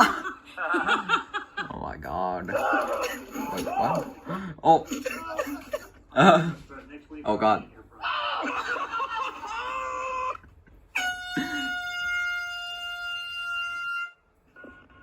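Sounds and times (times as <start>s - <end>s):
high-pitched wavering wail: 11.0s - 15.0s.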